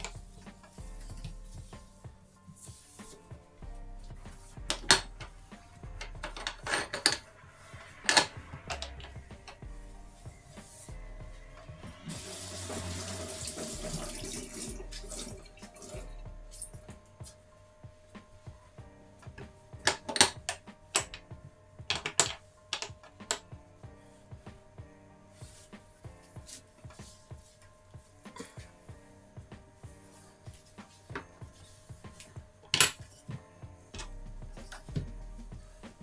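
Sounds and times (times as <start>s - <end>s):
soft background music: 0.0s - 36.0s
tap water running into sink: 12.0s - 16.1s.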